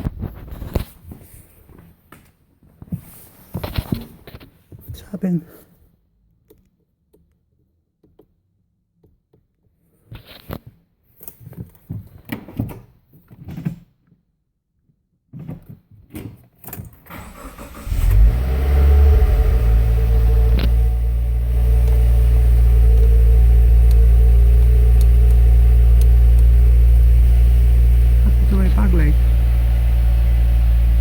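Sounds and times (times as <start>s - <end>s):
car engine starting and idling: 17.1s - 31.0s.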